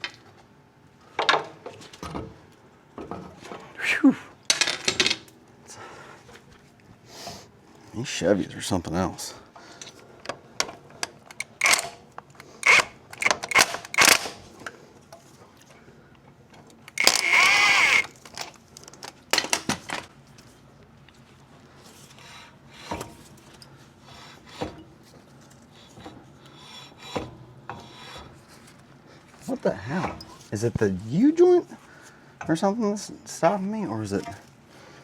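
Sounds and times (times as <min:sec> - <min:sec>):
metal scraping screech: 0:17.0 - 0:18.2.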